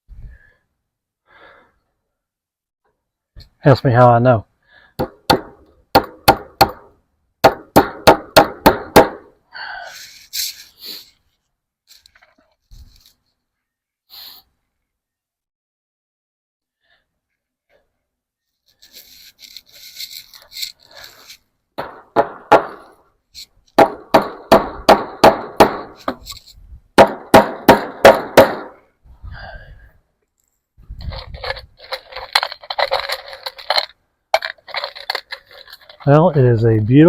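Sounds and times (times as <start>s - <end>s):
hammer striking staples into wood: 5.0s - 9.3s, 21.8s - 22.8s, 23.8s - 26.2s, 27.0s - 28.8s
scraping and rattling: 30.9s - 36.3s.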